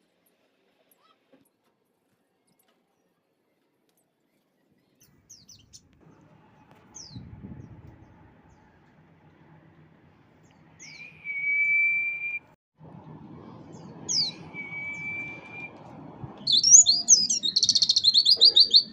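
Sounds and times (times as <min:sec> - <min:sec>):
songbird singing: 0:04.8 - 0:08.9, 0:10.4 - 0:12.4, 0:13.1 - 0:18.9.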